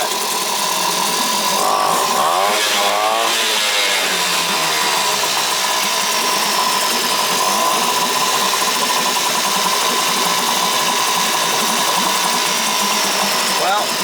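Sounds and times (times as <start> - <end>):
outboard motor idling: 0.0 - 14.0.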